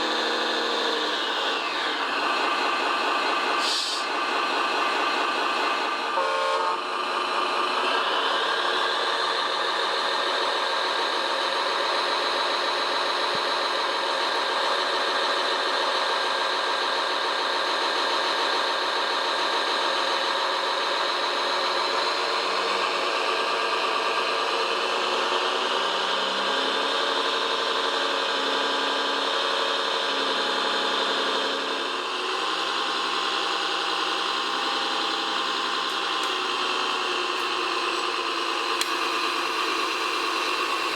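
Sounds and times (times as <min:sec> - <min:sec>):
model vehicle engine running: 0:00.0 - 0:40.9.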